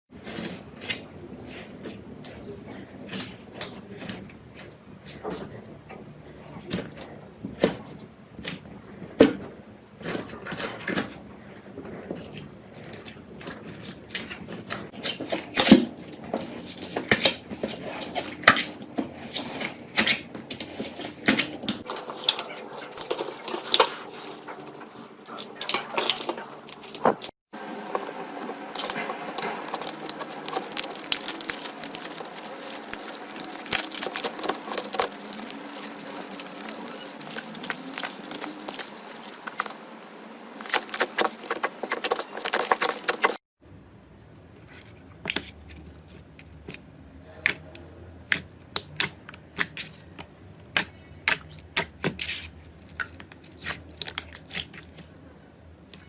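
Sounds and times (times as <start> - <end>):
slime squishing with wet clicks: 45.2 - 55.1.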